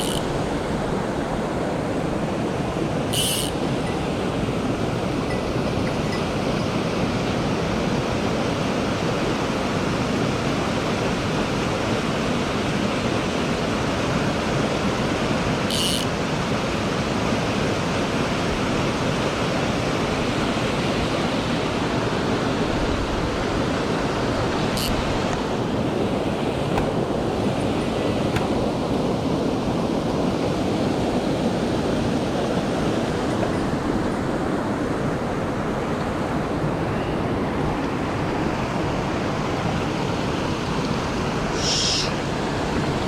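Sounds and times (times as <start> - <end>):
short high hisses: 41.5 - 42.3.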